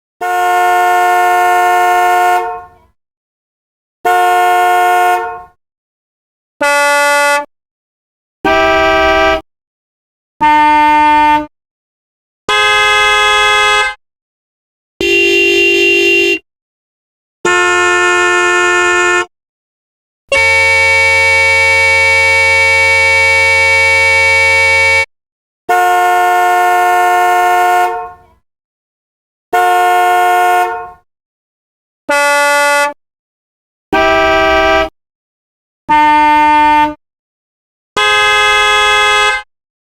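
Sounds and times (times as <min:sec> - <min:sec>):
car horns honking: 0:00.2 - 0:02.9, 0:04.0 - 0:05.6, 0:06.6 - 0:07.5, 0:08.4 - 0:09.5, 0:10.4 - 0:11.5, 0:12.5 - 0:14.0, 0:15.0 - 0:16.4, 0:17.4 - 0:19.3, 0:20.3 - 0:25.1, 0:25.7 - 0:28.3, 0:29.5 - 0:31.0, 0:32.1 - 0:33.0, 0:33.9 - 0:35.0, 0:35.9 - 0:37.0, 0:38.0 - 0:39.5.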